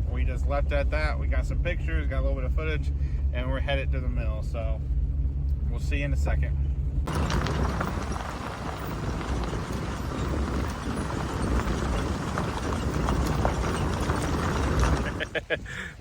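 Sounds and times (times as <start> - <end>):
low steady rumble: 0.0 - 16.0
tyres crunching on gravel: 7.1 - 15.6.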